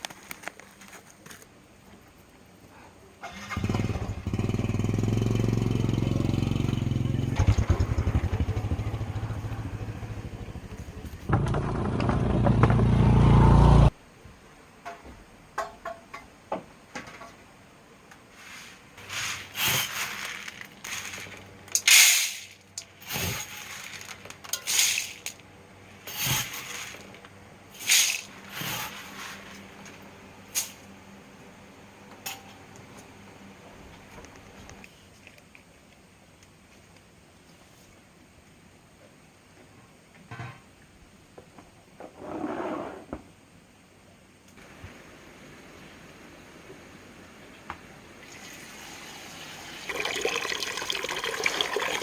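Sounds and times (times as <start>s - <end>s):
small engine running: 3.5s - 13.9s.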